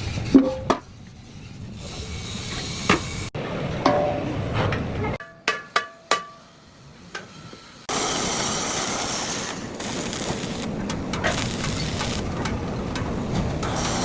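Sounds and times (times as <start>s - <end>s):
hammer striking steel: 5.2s - 6.6s
steady hissing noise: 6.3s - 12.4s.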